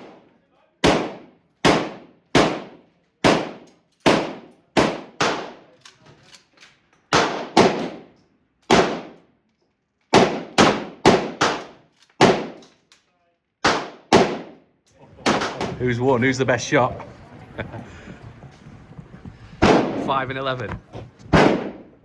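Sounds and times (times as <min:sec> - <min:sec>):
gunshots with echo: 0:00.8 - 0:05.6, 0:07.2 - 0:08.0, 0:08.7 - 0:09.2, 0:10.2 - 0:12.6, 0:13.6 - 0:14.6, 0:15.2 - 0:16.8, 0:19.5 - 0:20.3, 0:21.3 - 0:21.9.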